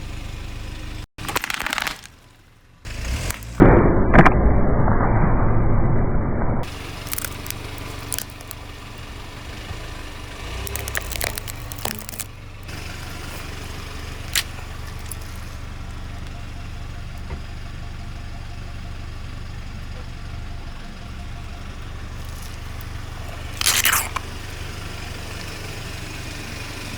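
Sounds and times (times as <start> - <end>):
car engine running: 0.0 - 3.7, 6.6 - 26.9
tyres crushing objects: 1.2 - 2.4, 6.6 - 8.6, 10.4 - 12.3, 22.2 - 24.4.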